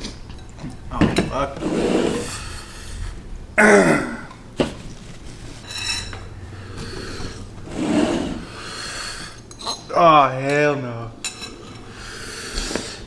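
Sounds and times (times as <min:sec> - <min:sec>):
person clearing throat: 0:03.6 - 0:04.4.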